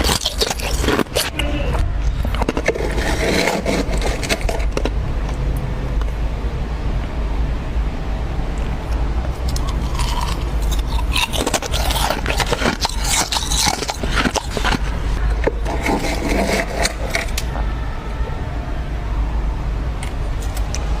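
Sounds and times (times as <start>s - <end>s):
ice scraping and crunching: 0.0s - 5.0s, 9.5s - 17.4s.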